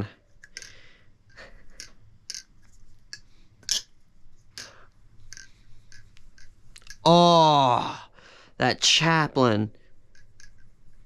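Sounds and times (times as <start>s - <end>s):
butterfly knife clicking and clacking: 0.4s - 0.8s, 1.7s - 2.5s, 4.6s - 7.0s, 10.1s - 10.7s.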